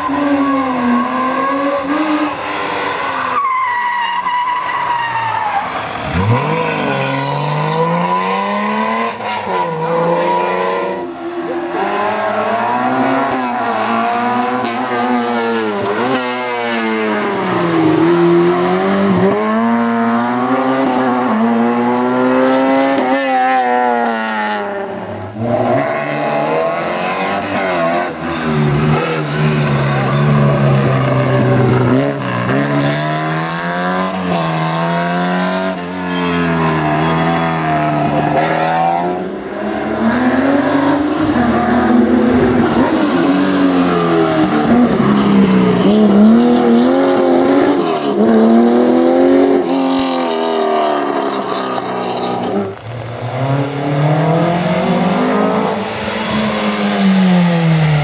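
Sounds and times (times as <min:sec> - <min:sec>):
rally car engines revving: 0:00.0 - 0:58.0.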